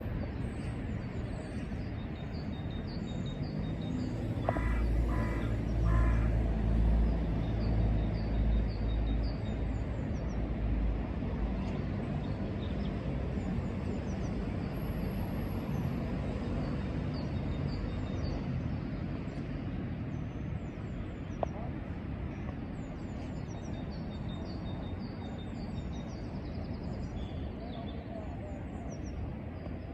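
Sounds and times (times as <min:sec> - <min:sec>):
harsh bird caws: 0:04.4 - 0:06.5.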